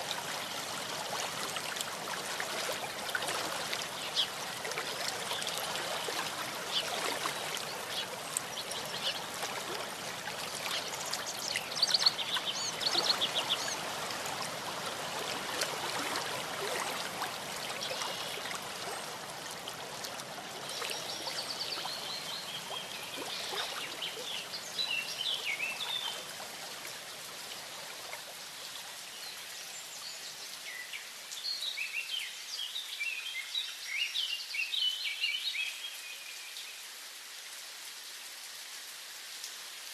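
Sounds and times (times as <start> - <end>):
small stream running: 0.0 - 39.9
songbirds chirping: 2.8 - 15.1, 20.4 - 26.4.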